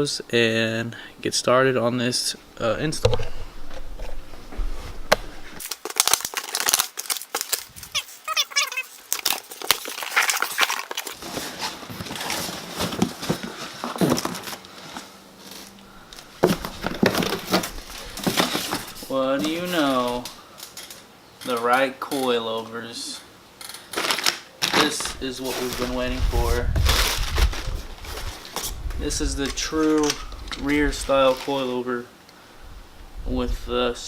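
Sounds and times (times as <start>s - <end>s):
packaging crinkling and tearing: 5.6s - 21.0s, 23.9s - 28.8s, 29.4s - 31.7s.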